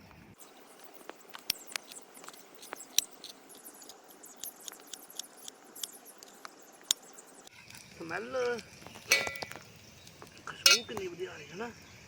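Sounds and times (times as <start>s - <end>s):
food popping in a hot pan: 6.9s - 11.0s.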